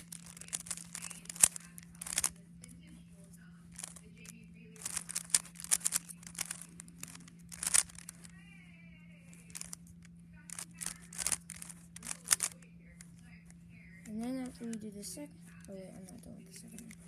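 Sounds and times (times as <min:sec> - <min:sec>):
puzzle cube clicks and scrapes: 0:00.0 - 0:08.5, 0:09.1 - 0:17.0.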